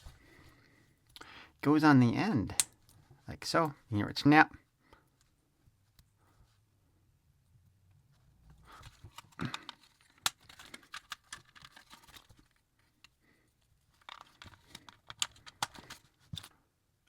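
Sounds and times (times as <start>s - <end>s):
plastic parts clicking and rattling: 8.6s - 13.2s, 13.9s - 16.6s
plastic part snapping: 14.0s - 16.5s.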